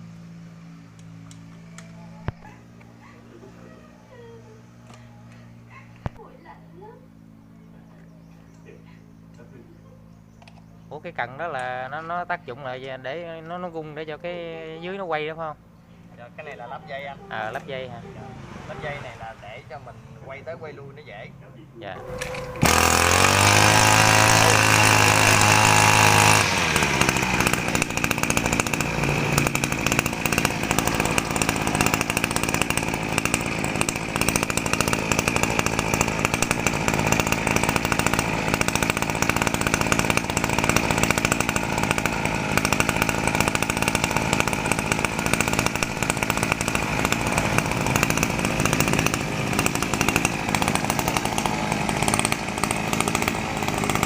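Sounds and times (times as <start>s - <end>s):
brush cutter engine running: 0.1s - 7.0s, 21.9s - 54.0s.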